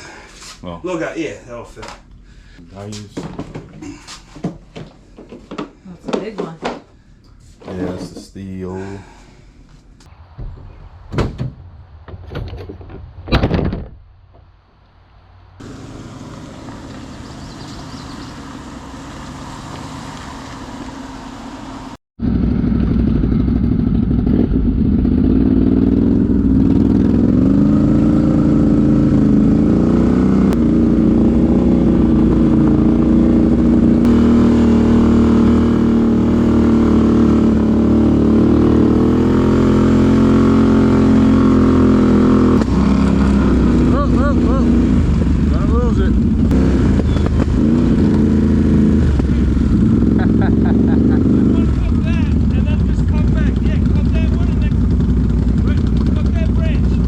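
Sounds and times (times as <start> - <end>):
vehicle engine revving: 15.6 - 57.0.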